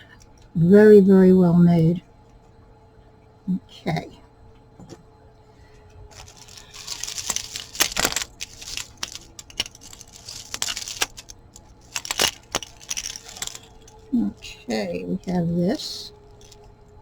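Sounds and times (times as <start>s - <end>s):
packaging rustling: 6.1s - 14.5s, 16.1s - 16.7s
jewelry clicking and clinking: 6.1s - 16.8s.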